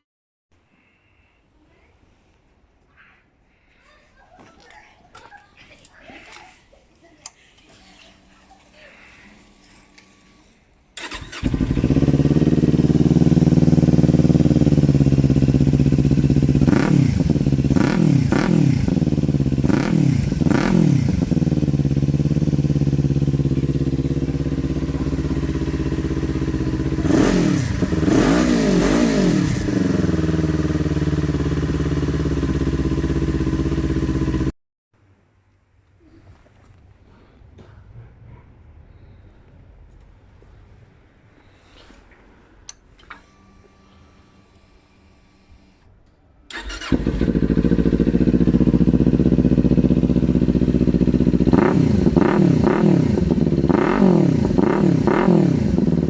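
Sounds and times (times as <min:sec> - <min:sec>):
motorcycle engine revving: 0:11.0 - 0:34.5, 0:46.5 - 0:56.0.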